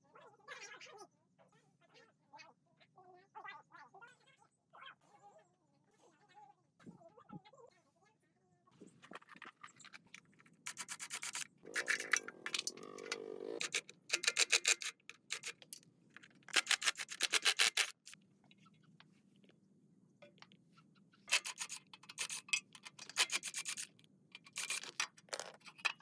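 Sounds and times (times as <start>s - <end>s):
scraping strokes on metal: 10.7s - 15.8s, 16.5s - 18.2s, 21.3s - 26.0s.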